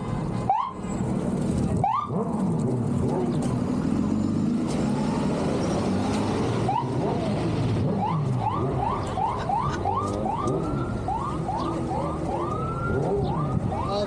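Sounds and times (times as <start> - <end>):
siren yelping: 0.5 - 0.8, 1.8 - 2.1, 6.6 - 7.0, 7.8 - 14.0.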